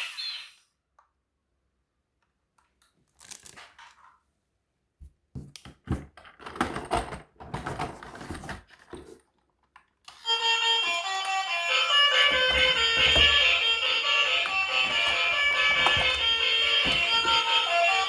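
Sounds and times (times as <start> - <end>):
plastic toys clattering and scraping: 5.8 - 9.9, 12.1 - 18.0
music: 10.1 - 18.0.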